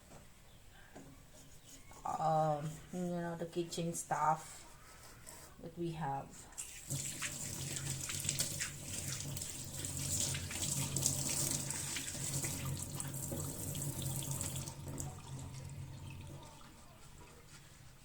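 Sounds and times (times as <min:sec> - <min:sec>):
tap water running into sink: 0:06.6 - 0:17.5.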